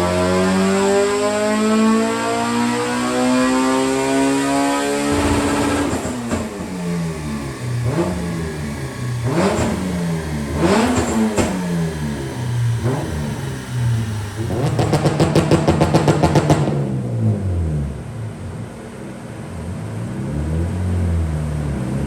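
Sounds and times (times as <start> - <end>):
car engine revving: 0.0 - 22.0.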